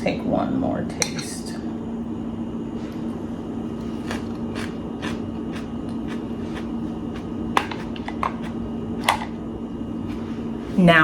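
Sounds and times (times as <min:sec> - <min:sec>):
steady low hum: 0:00.0 - 0:11.0
person chewing crunchy food: 0:03.8 - 0:09.2.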